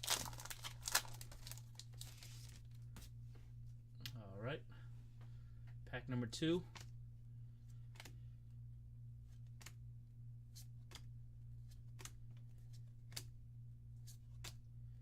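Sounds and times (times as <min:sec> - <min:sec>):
low electrical hum: 0:00.0 - 0:15.0
trading cards snapping: 0:07.9 - 0:08.2, 0:09.5 - 0:09.8, 0:13.0 - 0:13.3.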